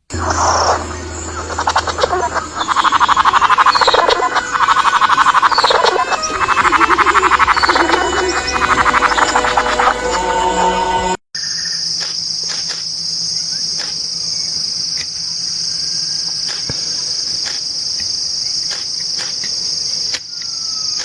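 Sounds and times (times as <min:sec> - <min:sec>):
frog pulsed croaks: 0:00.1 - 0:10.9
short higher chirps: 0:00.1 - 0:11.2.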